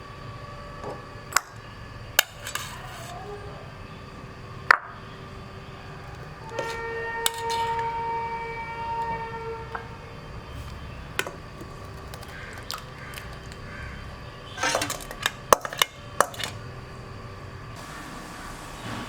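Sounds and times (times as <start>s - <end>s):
low steady hum: 0.0s - 18.6s
metal utensil clinking on cookware: 1.3s - 3.2s, 6.0s - 8.1s, 10.6s - 13.7s, 14.5s - 16.7s.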